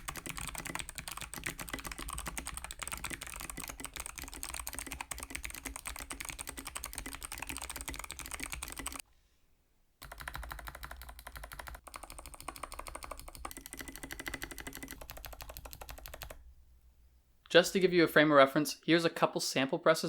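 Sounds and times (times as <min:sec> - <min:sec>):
fast typing on clicky keyboard: 0:00.0 - 0:09.0, 0:10.0 - 0:16.4.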